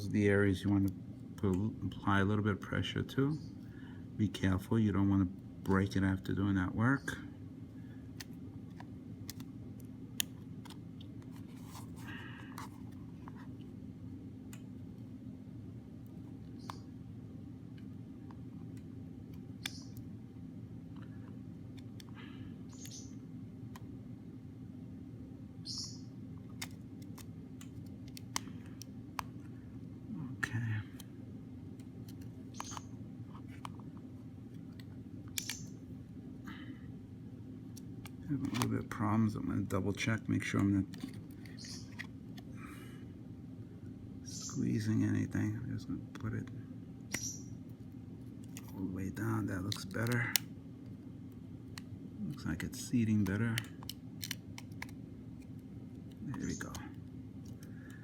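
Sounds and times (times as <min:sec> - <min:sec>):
steady low hum: 0:00.0 - 0:58.0
small plastic clicks: 0:53.1 - 0:58.0.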